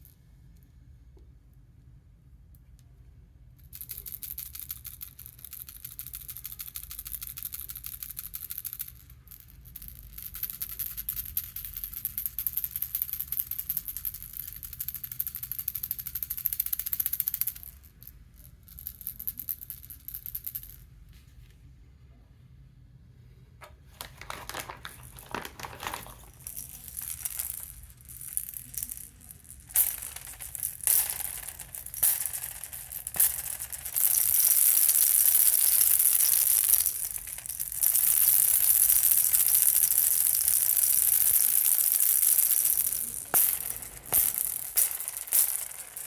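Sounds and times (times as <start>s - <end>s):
baby rattle shaken fast: 24.0s - 46.0s.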